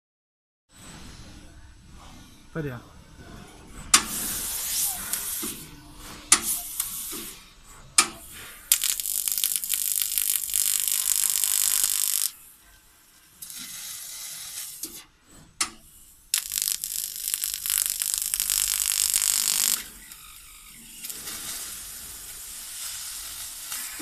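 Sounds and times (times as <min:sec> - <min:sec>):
laser cutting hiss: 0:03.9 - 0:07.4, 0:08.0 - 0:12.5, 0:13.3 - 0:15.0, 0:16.0 - 0:24.0.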